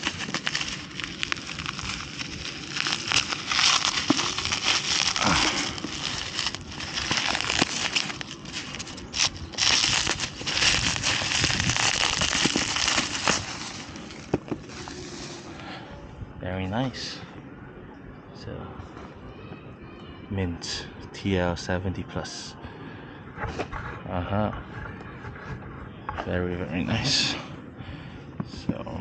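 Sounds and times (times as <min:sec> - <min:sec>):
packaging crinkling: 0:00.0 - 0:15.5.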